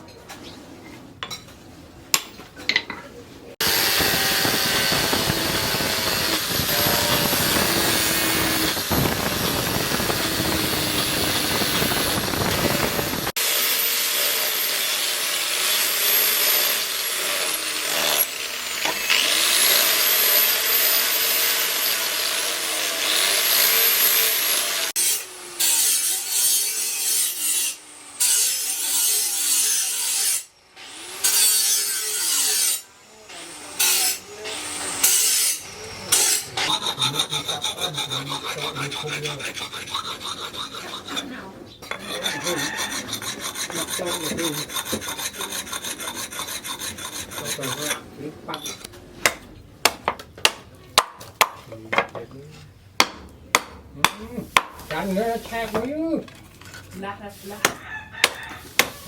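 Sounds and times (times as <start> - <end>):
abrasive rubbing and rasping: 3.8 - 13.3, 36.0 - 48.9.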